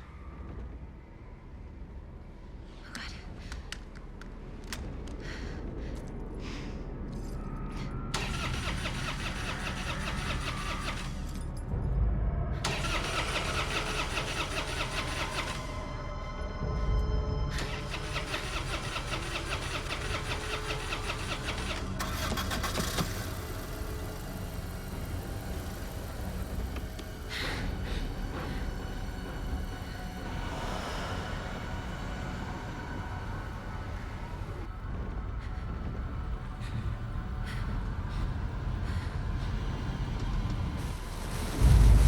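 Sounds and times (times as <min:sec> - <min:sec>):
car starter cranking engine: 0:08.2 - 0:11.3, 0:12.6 - 0:15.9, 0:17.6 - 0:24.8.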